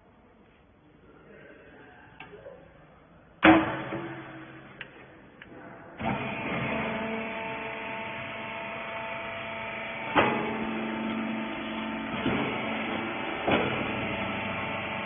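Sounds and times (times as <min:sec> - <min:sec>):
baler motor humming: 0:06.0 - 0:15.0.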